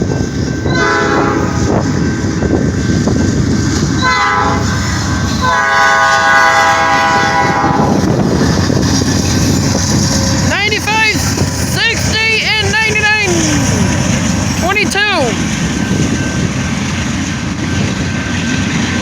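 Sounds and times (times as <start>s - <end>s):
train rumbling past: 0.0s - 19.0s
locomotive horn blasts: 0.7s - 2.3s, 4.0s - 8.0s.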